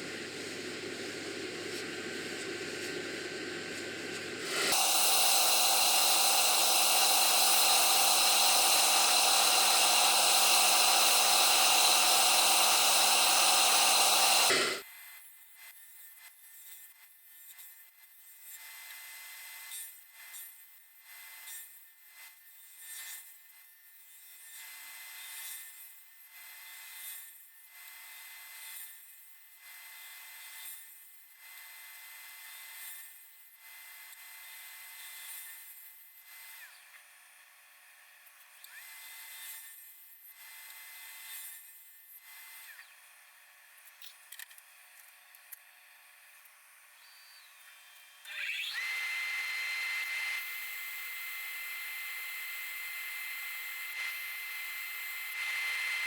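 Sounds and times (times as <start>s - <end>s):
steady high whine: 0.0s - 14.8s
wood lathe cutting wood: 0.0s - 14.8s, 48.3s - 56.0s.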